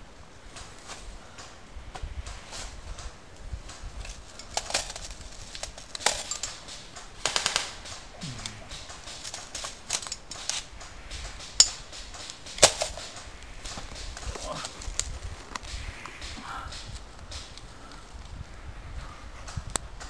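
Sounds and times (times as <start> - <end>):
airsoft guns firing: 6.0 - 14.3.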